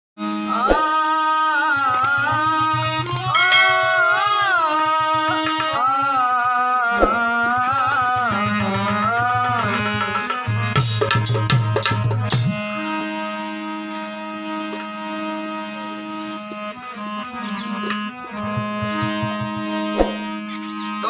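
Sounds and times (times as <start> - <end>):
tabla beat: 1.6 - 12.9, 17.8 - 20.4
sliding melodic lead: 2.0 - 6.0.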